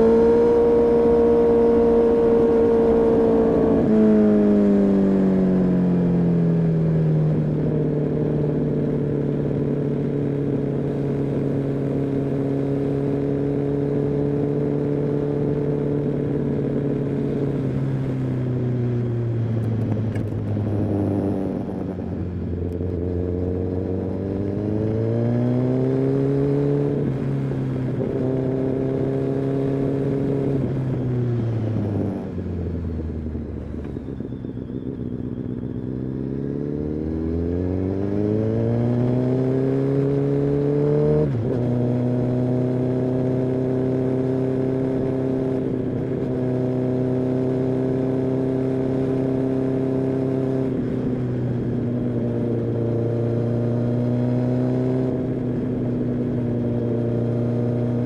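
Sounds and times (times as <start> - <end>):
motorcycle engine and exhaust: 0.0 - 58.0.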